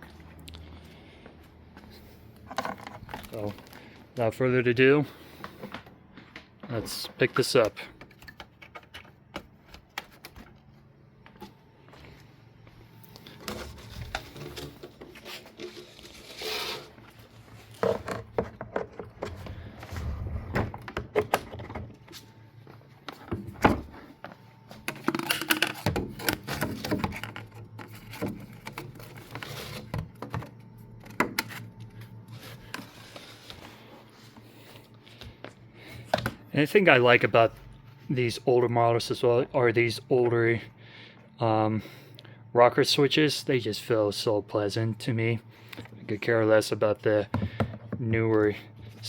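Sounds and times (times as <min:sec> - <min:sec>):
shop vacuum being handled: 0:02.4 - 0:03.8, 0:13.2 - 0:22.4, 0:23.0 - 0:34.4.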